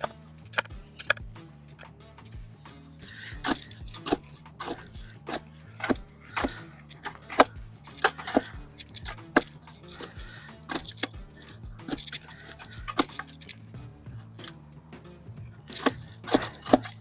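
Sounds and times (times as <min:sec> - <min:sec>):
digging tool striking soil: 0:00.0 - 0:01.9
background music: 0:00.0 - 0:17.0.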